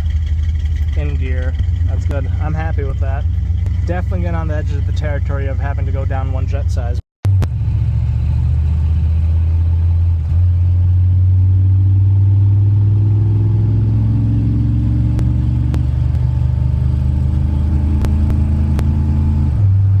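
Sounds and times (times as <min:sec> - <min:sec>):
engine idling: 0:00.0 - 0:13.0
rising higher hum: 0:07.3 - 0:19.7.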